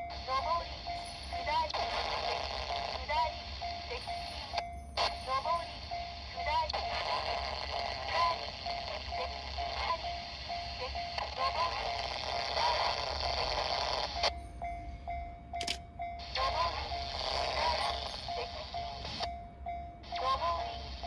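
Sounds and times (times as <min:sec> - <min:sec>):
level crossing bell ringing: 0:14.4 - 0:20.6.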